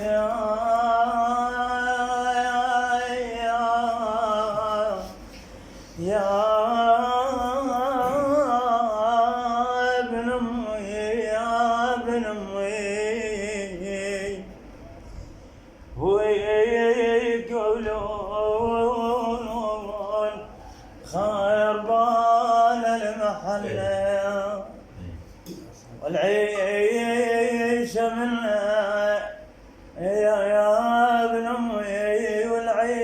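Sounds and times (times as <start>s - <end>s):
man singing a folk lament: 21.1s - 24.8s, 26.0s - 29.4s.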